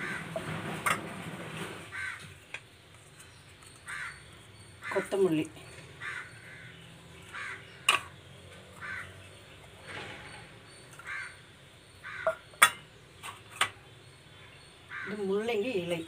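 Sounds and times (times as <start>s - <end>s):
crows cawing: 0.0s - 0.4s, 1.9s - 2.4s, 3.8s - 5.2s, 6.0s - 8.1s, 8.8s - 9.2s, 11.0s - 12.8s, 14.9s - 15.2s
utensil clinking against dish: 12.2s - 13.8s.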